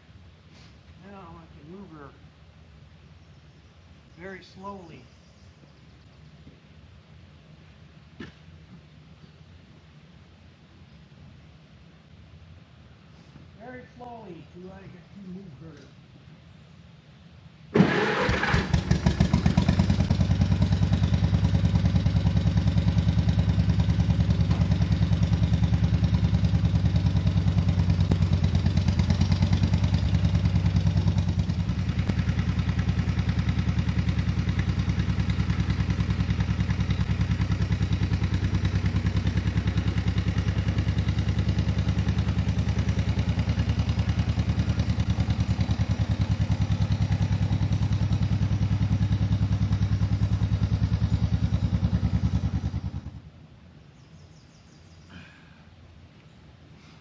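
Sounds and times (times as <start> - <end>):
tractor engine running: 17.7 - 53.8.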